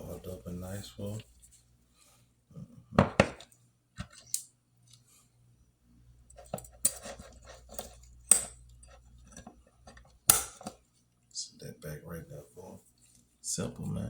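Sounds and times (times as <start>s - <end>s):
metal clicks of pistol parts: 4.2s - 4.5s.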